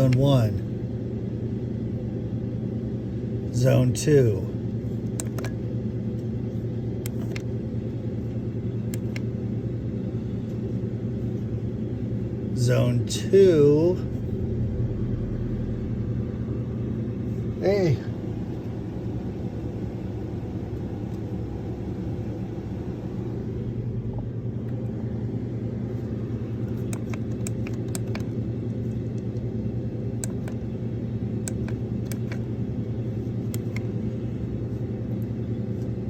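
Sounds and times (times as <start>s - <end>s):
air conditioner humming: 0.0s - 36.0s.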